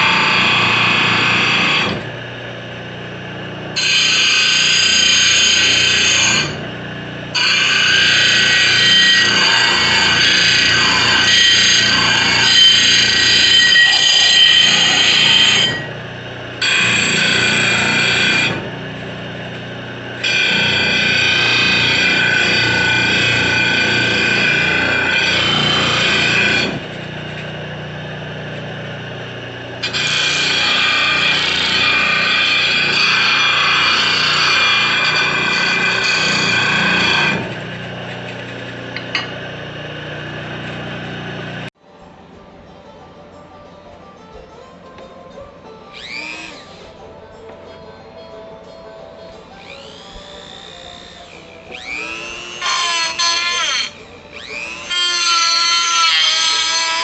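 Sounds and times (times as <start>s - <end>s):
drill bit cutting: 0.0s - 41.7s, 46.0s - 47.0s, 49.6s - 57.0s
drill press motor running: 0.0s - 41.8s, 45.9s - 47.0s, 49.4s - 57.0s.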